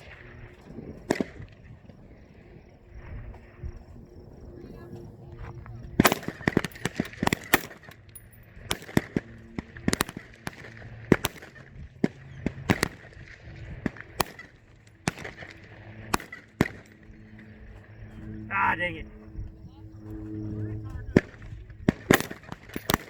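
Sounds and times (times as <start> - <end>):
rifle shots: 6.0 - 8.0, 8.6 - 16.9, 21.2 - 23.0.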